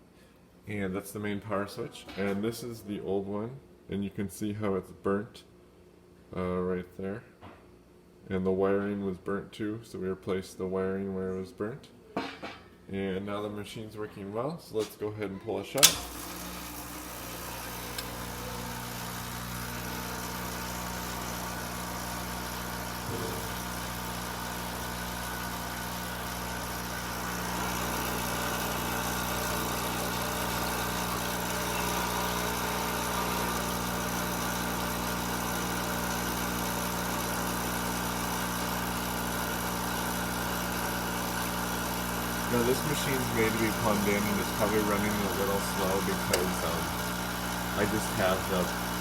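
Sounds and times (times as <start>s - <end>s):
espresso machine pump humming: 15.8s - 49.0s.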